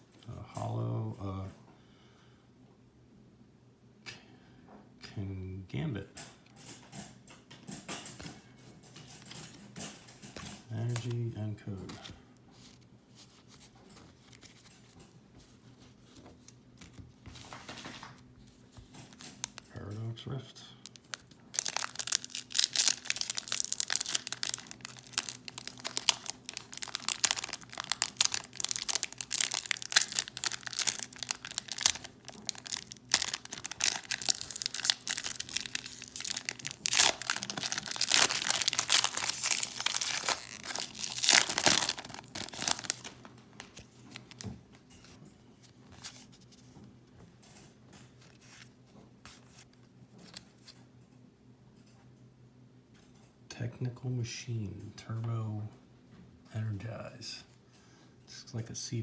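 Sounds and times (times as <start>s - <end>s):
foil wrapper tearing and crinkling: 20.8s - 44.4s.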